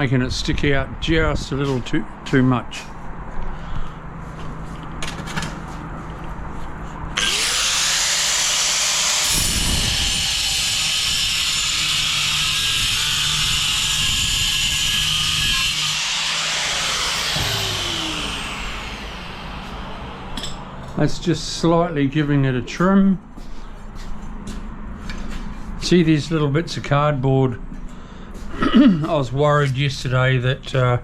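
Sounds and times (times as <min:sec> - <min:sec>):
power tool grinding tile: 0:07.2 - 0:21.0.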